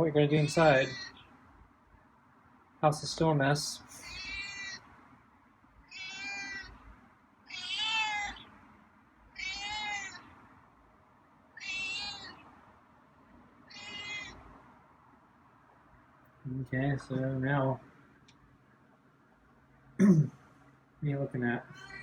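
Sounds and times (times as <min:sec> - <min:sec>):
cat meowing loudly: 0:04.0 - 0:04.8, 0:05.9 - 0:06.7, 0:07.5 - 0:08.4, 0:09.3 - 0:10.2, 0:11.6 - 0:12.4, 0:13.7 - 0:14.4, 0:21.7 - 0:22.0.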